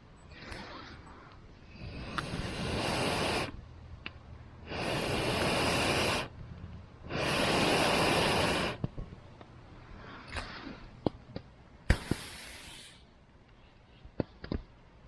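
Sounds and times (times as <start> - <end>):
breath blown onto campfire: 7.1 - 8.8.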